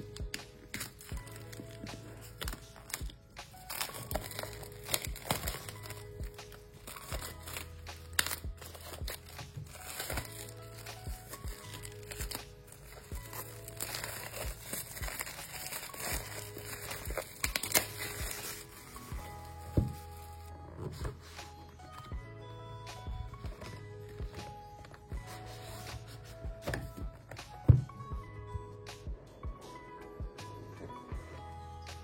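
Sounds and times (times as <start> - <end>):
plastic packaging crinkling: 0.0 - 20.5
background music with bass line: 0.0 - 32.0.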